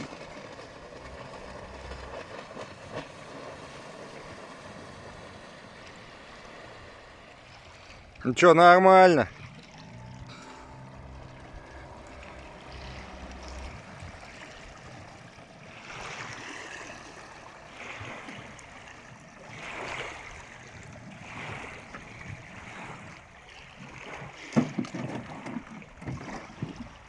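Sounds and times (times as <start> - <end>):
water lapping against boat hull: 0.0 - 27.0
low steady hum: 9.1 - 17.8.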